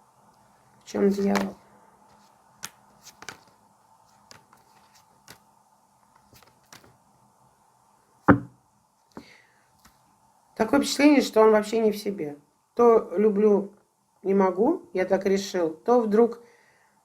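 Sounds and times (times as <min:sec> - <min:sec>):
cards tapping on a table: 0:08.3 - 0:08.5
sharp knock: 0:08.3 - 0:08.6.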